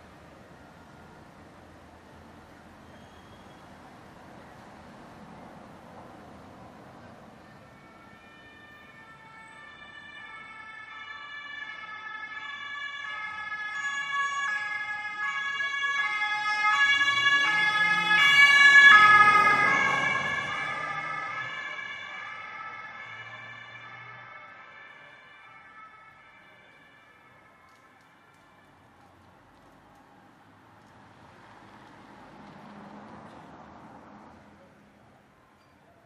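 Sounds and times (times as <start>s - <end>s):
two-tone ambulance siren: 0.0s - 4.5s, 7.0s - 29.7s
vehicle engine and tyres rumbling: 11.9s - 36.0s.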